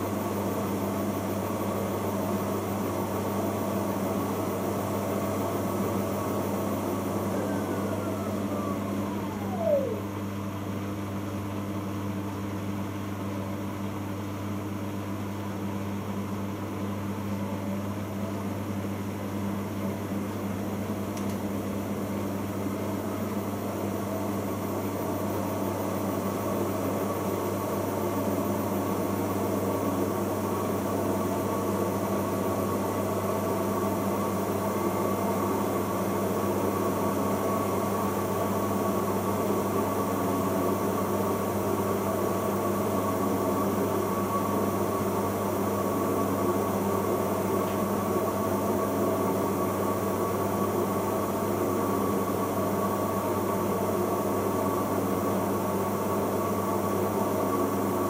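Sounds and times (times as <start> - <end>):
washing machine hum: 0.0 - 58.0
falling whine: 6.1 - 10.6.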